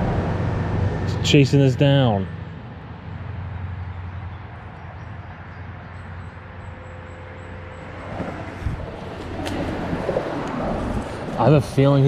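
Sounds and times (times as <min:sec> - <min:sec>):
low even rumble: 0:00.0 - 0:04.7, 0:07.5 - 0:12.0.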